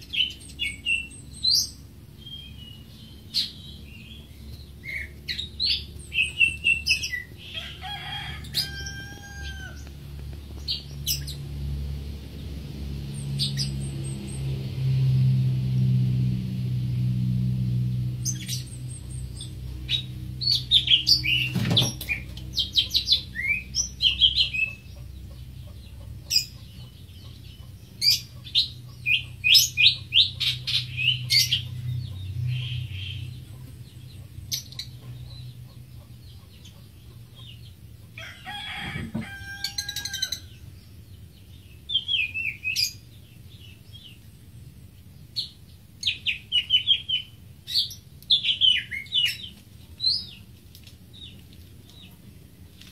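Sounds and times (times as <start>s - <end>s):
bird chirping and trilling: 0.0s - 7.8s, 18.2s - 37.7s, 39.4s - 44.2s, 45.4s - 50.4s.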